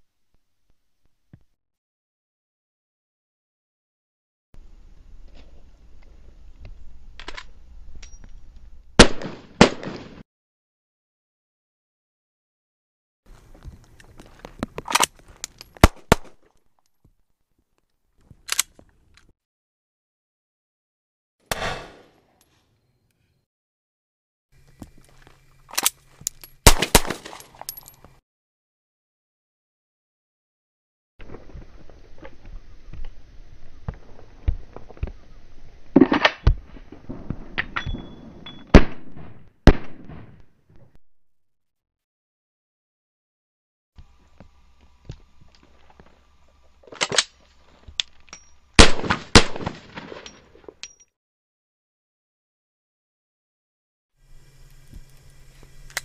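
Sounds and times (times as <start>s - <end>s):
handgun shots with echo: 9.0s - 10.2s, 15.8s - 16.4s, 21.5s - 22.1s, 26.6s - 27.4s, 37.8s - 40.4s, 48.8s - 49.9s
handgun clicks and clacks: 18.4s - 19.3s, 25.7s - 28.0s.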